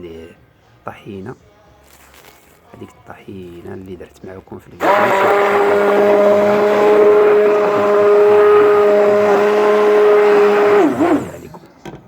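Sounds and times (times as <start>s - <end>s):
blender motor whining: 4.8s - 11.7s.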